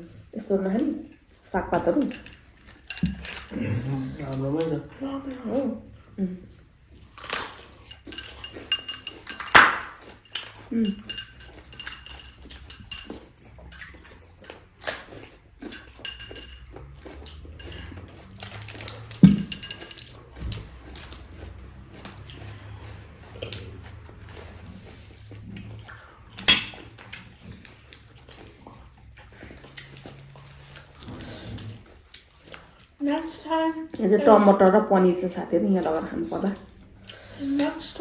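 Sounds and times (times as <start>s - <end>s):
cutlery and dishes clinking: 1.7s - 4.4s, 7.2s - 22.3s, 26.3s - 27.4s
chewing: 5.9s - 34.2s, 35.8s - 38.0s.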